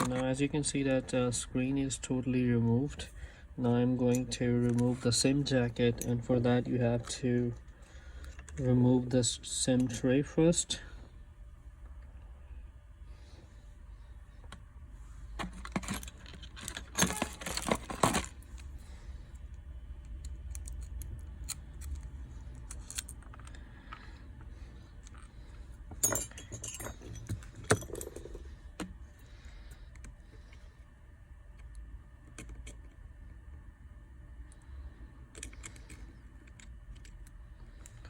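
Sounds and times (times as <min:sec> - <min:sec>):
low steady hum: 0:00.0 - 0:38.0.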